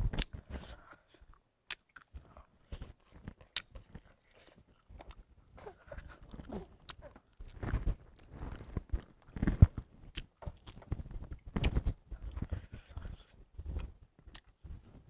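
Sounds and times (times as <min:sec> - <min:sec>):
biting and chewing: 0:00.1 - 0:14.8
baby vocalizing: 0:05.6 - 0:07.2.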